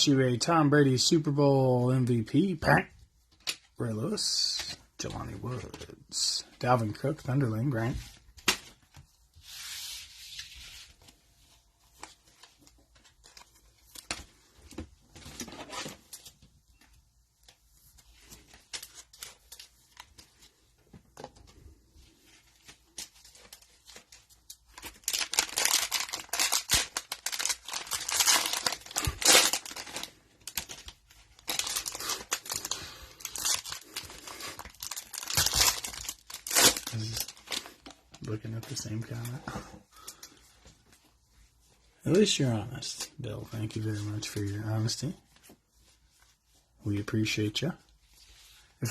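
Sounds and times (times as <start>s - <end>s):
cellophane wrapper crinkling and tearing: 22.6s - 39.3s.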